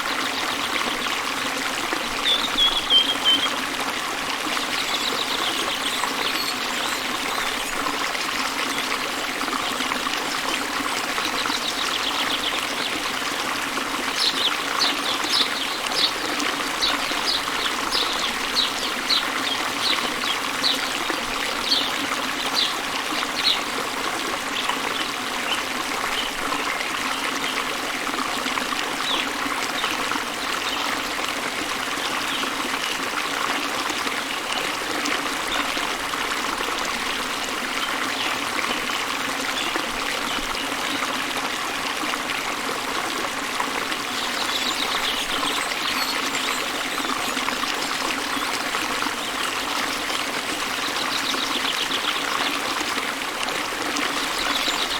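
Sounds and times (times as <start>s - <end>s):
bird chirping: 2.2s - 3.6s
waterfall rushing: 9.0s - 25.0s.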